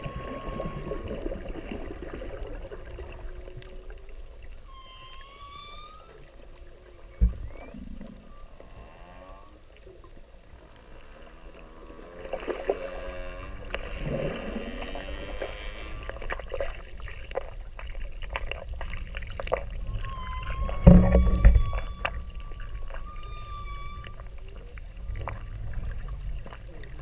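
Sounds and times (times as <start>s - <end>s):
whale call underwater: 0.0s - 9.9s, 10.6s - 16.8s, 19.4s - 26.6s
low water rumble: 0.0s - 27.0s
thin high whistle: 4.7s - 6.3s, 20.0s - 24.2s.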